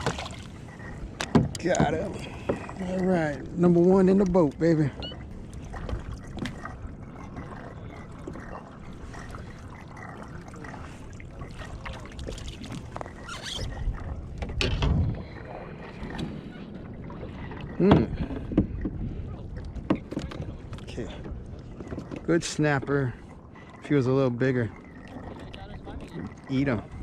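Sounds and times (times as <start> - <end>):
knocks and clatter on plastic kayak: 0.0 - 4.2, 5.1 - 10.2, 10.8 - 22.9
water wash: 0.0 - 14.4
wind: 0.0 - 27.0.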